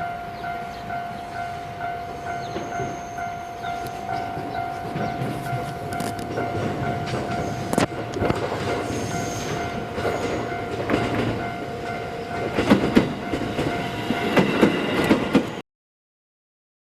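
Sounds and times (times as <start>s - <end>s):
train wheels clacking over rail joints: 2.1s - 15.6s.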